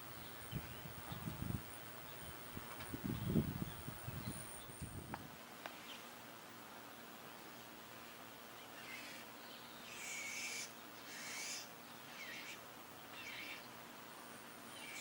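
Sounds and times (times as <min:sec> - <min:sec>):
raspy high-pitched bird calls: 0:08.6 - 0:13.7, 0:14.7 - 0:15.0.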